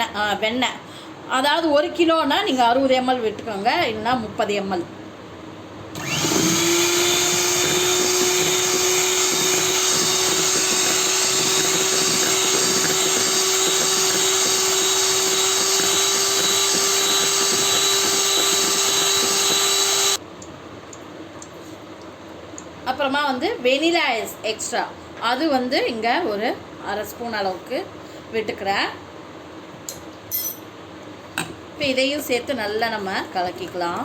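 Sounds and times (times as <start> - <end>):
electric hand beater running: 6.0 - 20.2.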